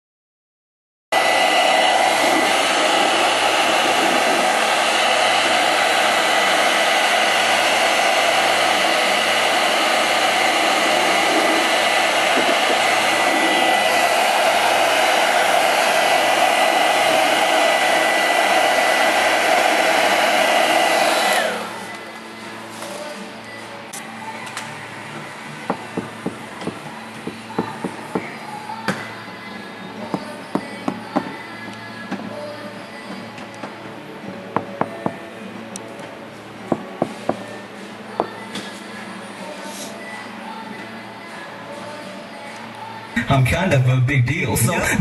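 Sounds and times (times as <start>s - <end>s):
electric blower motor whining: 1.2s - 22.2s.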